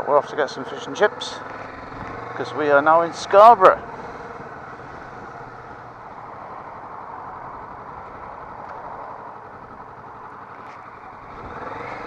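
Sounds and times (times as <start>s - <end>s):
motorcycle wind and road noise: 0.0s - 12.0s.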